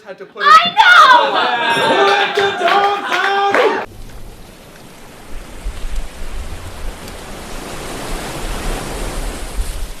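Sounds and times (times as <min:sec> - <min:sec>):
audience applauding: 0:00.5 - 0:03.9.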